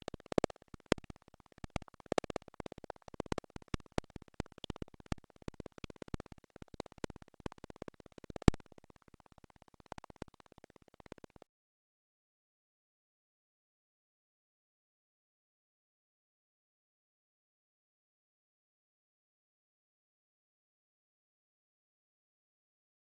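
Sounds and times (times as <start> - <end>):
keyboard typing: 0.0 - 11.4.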